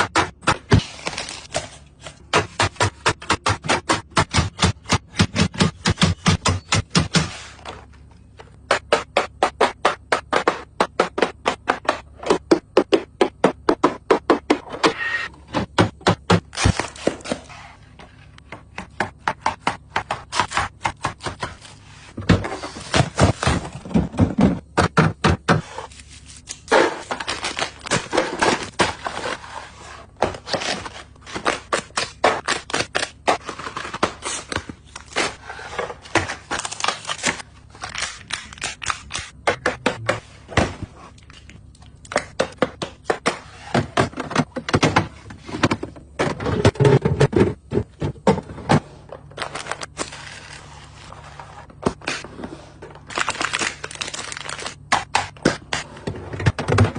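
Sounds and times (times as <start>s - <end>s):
plastic and packaging clicking: 53.1s - 55.8s.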